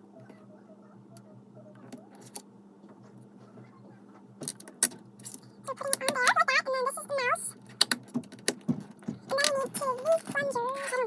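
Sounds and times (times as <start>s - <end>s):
faint steady hum: 0.0s - 11.0s
plastic pieces clicking and rattling: 7.6s - 11.0s.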